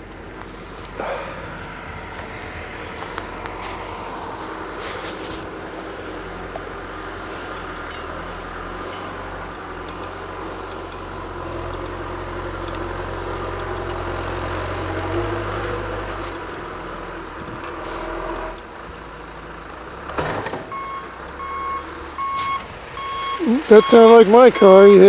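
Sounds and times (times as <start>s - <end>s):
truck engine running: 0.0s - 25.0s
reversing beeper: 20.7s - 25.0s.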